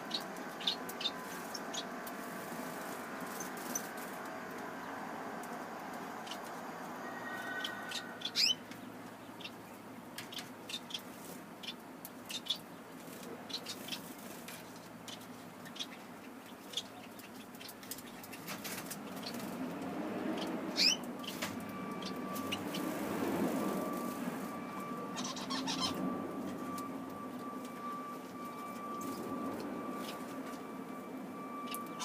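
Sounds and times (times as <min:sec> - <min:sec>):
finches and canaries chirping: 0:00.0 - 0:02.0, 0:06.2 - 0:26.8, 0:31.6 - 0:32.0
steady hum: 0:00.0 - 0:32.0.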